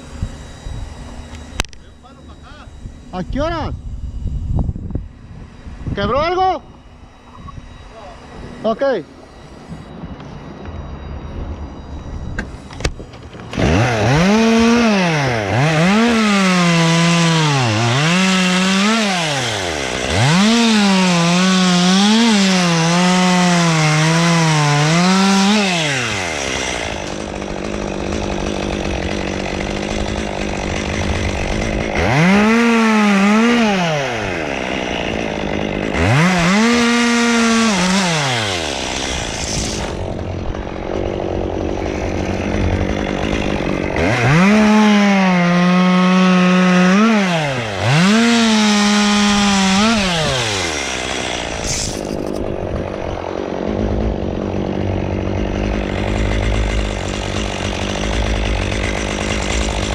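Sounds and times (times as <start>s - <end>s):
chainsaw cutting wood: 11.8s - 59.9s.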